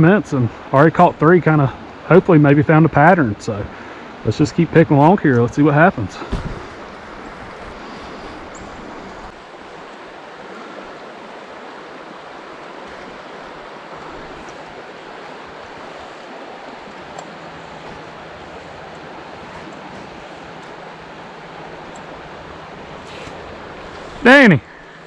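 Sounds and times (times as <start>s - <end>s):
river water rushing: 0.4s - 25.0s.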